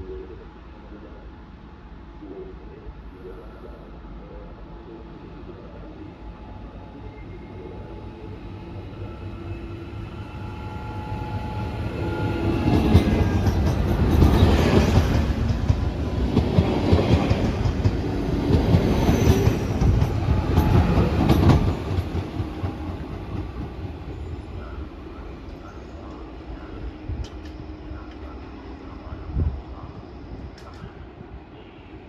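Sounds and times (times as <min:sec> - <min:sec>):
train passing close by: 0:01.3 - 0:32.0
train wheels knocking: 0:12.3 - 0:24.1.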